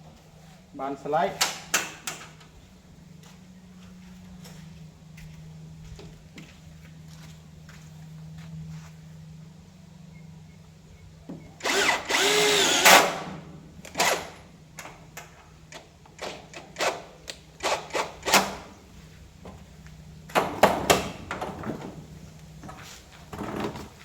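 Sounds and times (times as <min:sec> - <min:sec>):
electric drill running: 0:11.6 - 0:14.4.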